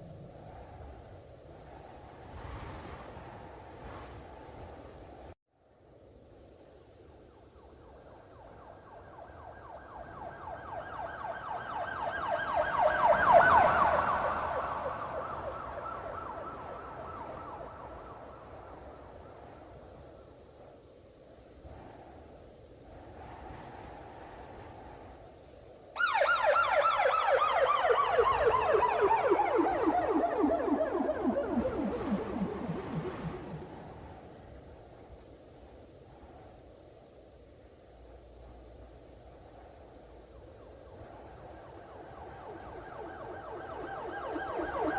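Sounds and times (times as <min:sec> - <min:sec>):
police siren yelping: 0:26.0 - 0:33.8, 0:42.6 - 0:44.9.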